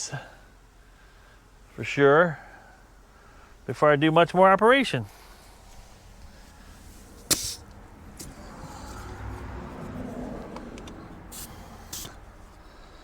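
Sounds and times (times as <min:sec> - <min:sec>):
compressed air filling tire: 0:05.1 - 0:13.0
sharp click: 0:07.2 - 0:08.3.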